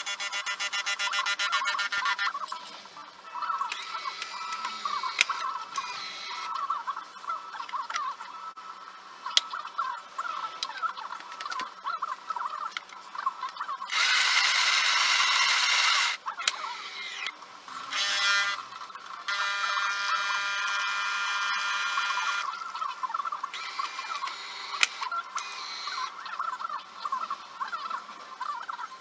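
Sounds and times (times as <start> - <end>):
espresso machine running: 13.9 - 17.1, 19.3 - 22.5.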